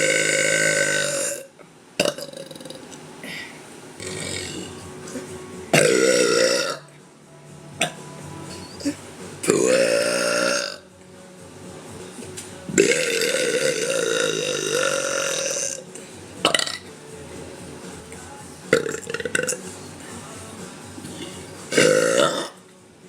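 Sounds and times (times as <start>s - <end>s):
woman burping: 0.0s - 4.8s, 5.8s - 6.9s, 7.8s - 10.8s, 12.8s - 16.9s, 21.1s - 22.6s.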